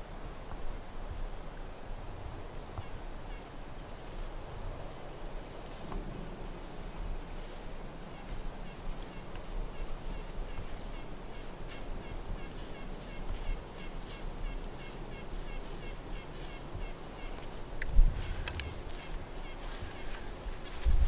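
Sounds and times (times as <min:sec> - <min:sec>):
birds calling: 0:08.1 - 0:20.8.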